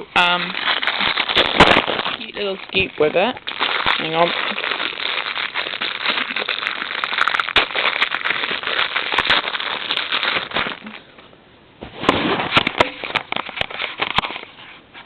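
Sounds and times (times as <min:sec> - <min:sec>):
salt grains shifting: 0:00.1 - 0:11.0
plastic packet crinkling: 0:00.1 - 0:11.2, 0:12.5 - 0:14.5.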